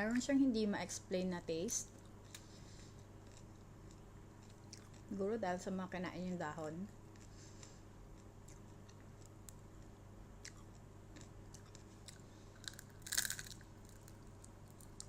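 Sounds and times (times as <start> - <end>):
person chewing crunchy food: 2.2 - 5.1, 7.1 - 15.0.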